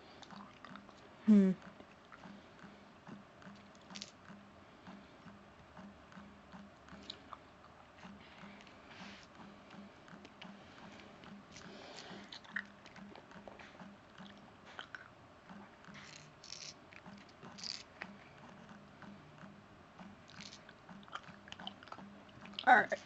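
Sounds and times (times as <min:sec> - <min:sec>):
faint steady hum: 0:00.0 - 0:23.0
sucking on a lollipop: 0:15.9 - 0:16.8.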